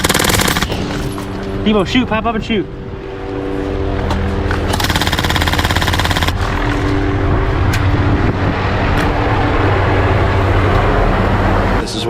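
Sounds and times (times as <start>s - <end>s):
rapid automatic gunfire: 0.0s - 0.8s, 4.7s - 6.8s
low engine drone: 0.0s - 12.0s.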